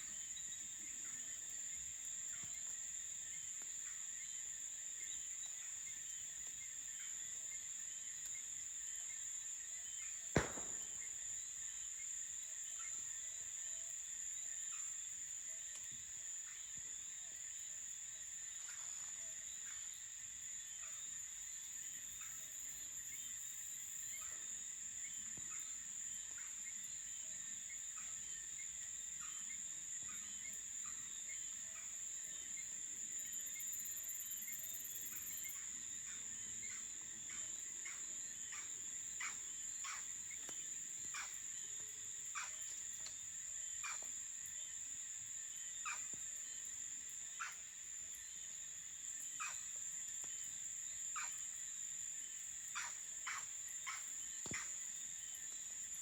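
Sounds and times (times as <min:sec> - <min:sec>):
crickets trilling: 0:00.0 - 0:56.0
campfire crackling: 0:10.4 - 0:11.3.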